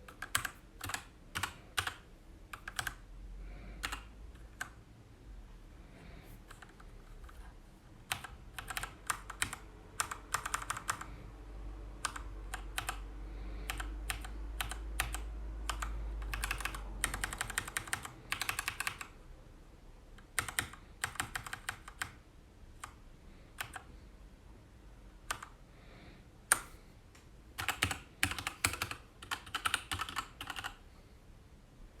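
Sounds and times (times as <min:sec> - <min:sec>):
mechanical keyboard typing: 0:00.0 - 0:03.0, 0:03.8 - 0:04.8, 0:06.5 - 0:11.1, 0:12.0 - 0:13.0, 0:13.6 - 0:19.2, 0:20.2 - 0:22.2, 0:22.8 - 0:23.0, 0:23.6 - 0:23.9, 0:25.2 - 0:25.6, 0:27.6 - 0:30.8.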